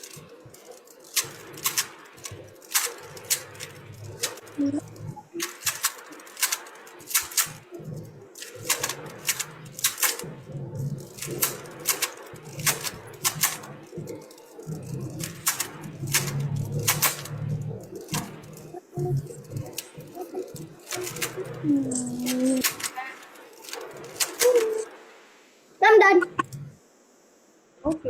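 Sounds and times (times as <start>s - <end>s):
sharp clicks: 0.0s - 24.9s
faint low hum: 0.0s - 28.0s.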